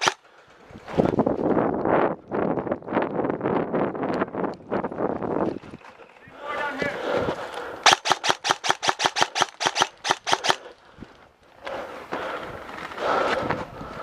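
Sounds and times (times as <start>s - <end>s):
airsoft gun rapid shots: 0.0s - 0.2s, 7.8s - 10.7s.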